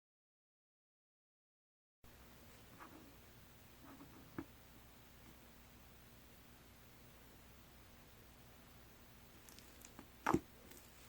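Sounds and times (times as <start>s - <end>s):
soft slime handling: 9.4s - 11.0s.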